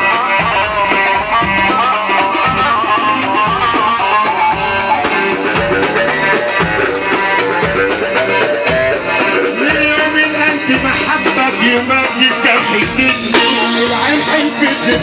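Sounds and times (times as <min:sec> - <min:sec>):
driving percussion beat: 0:00.0 - 0:15.0
high jingle ticking: 0:00.0 - 0:15.0
winding instrumental melody: 0:00.0 - 0:15.0.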